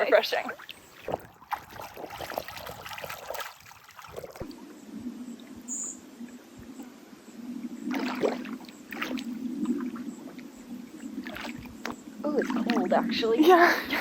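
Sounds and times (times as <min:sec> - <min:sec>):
water splashing around wading person: 0:00.0 - 0:04.6, 0:07.7 - 0:13.6.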